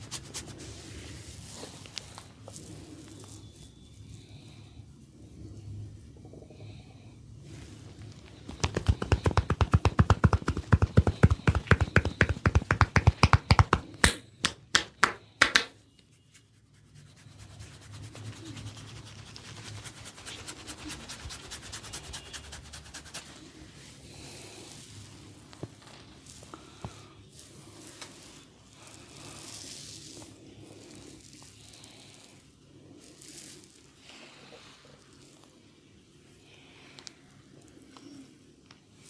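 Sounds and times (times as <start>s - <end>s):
hands rubbing through hair: 0.0s - 3.4s, 7.6s - 23.8s
hands striking a head: 8.5s - 15.8s
sharp slaps: 8.6s - 15.7s.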